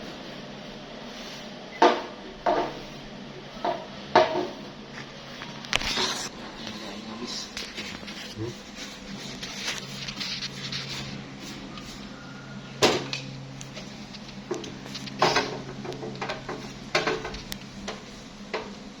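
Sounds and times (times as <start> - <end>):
steady low hum: 0.0 - 19.0
objects knocking and clattering: 1.8 - 2.8, 3.6 - 4.6, 12.8 - 18.7.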